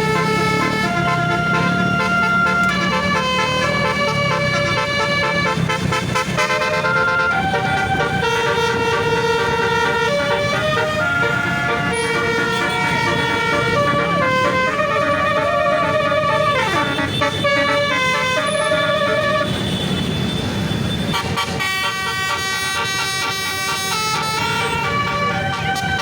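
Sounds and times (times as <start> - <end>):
air horn playing a tune: 0.0 - 19.6, 21.1 - 26.0
bus engine running: 0.0 - 26.0.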